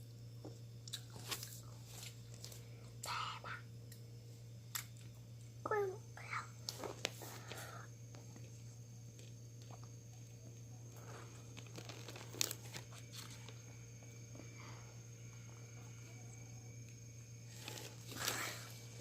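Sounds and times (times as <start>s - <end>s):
crunching and chewing biscuit sticks: 0.4s - 3.1s, 11.0s - 14.4s.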